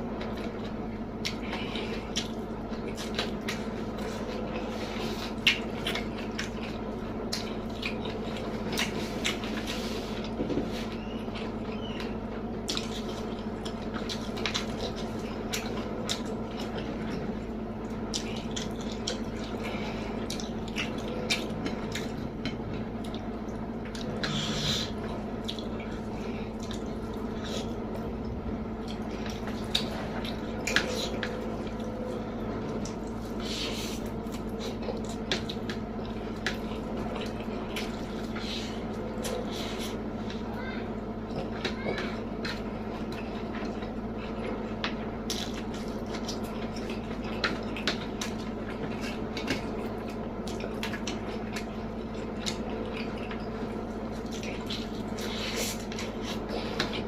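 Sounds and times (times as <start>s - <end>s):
steady low hum: 0.0s - 57.0s
wet chewing and lip smacks: 23.0s - 31.9s.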